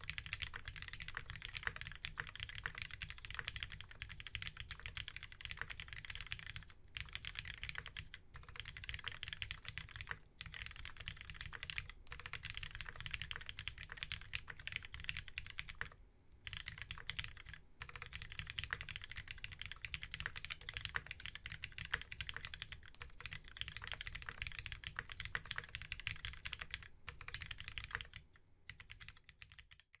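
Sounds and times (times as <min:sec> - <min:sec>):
fast typing on mechanical keyboard: 0:00.0 - 0:30.0.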